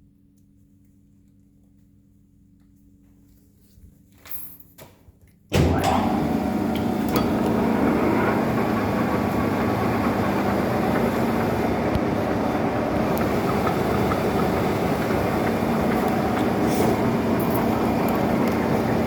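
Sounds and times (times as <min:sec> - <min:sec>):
lathe running: 0:05.6 - 0:19.0.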